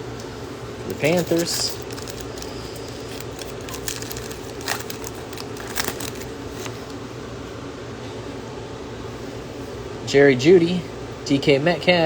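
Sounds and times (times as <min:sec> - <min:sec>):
foil wrapper crinkling and tearing: 0:00.8 - 0:06.9
cards being handled: 0:00.8 - 0:07.0.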